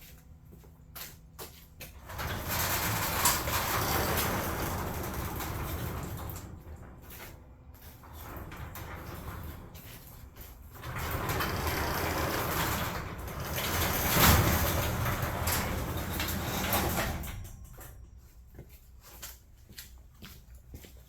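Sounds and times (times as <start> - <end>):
garage door rolling on tracks: 1.9 - 18.1.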